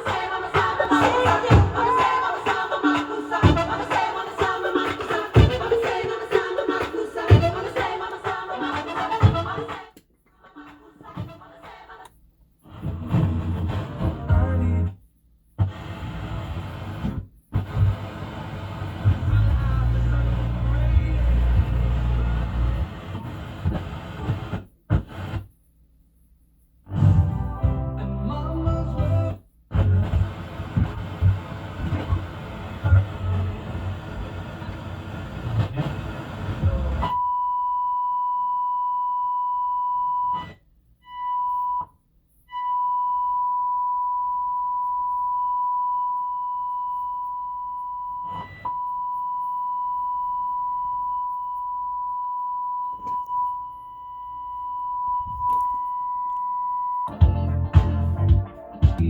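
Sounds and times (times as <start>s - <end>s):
music: 0.0s - 9.9s, 12.7s - 15.0s, 19.0s - 22.9s, 26.9s - 31.3s, 57.0s - 59.0s.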